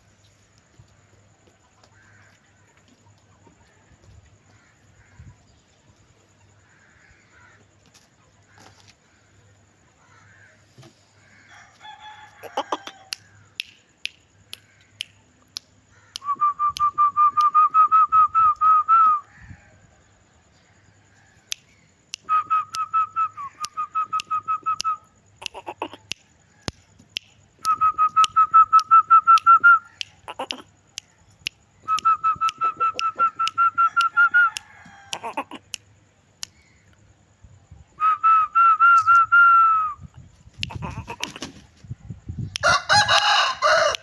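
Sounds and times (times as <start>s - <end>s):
chickens calling: 9.9s - 13.8s, 22.3s - 35.8s, 38.4s - 44.0s.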